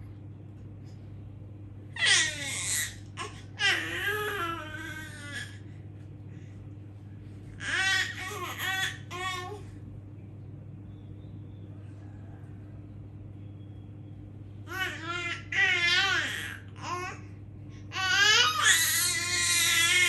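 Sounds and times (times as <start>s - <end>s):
baby whiny crying: 2.0s - 5.6s, 7.6s - 9.6s, 17.9s - 20.0s.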